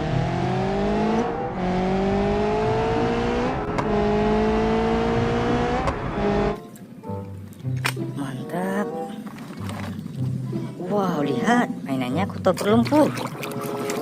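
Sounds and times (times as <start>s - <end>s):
racing car engine accelerating: 0.0s - 6.6s.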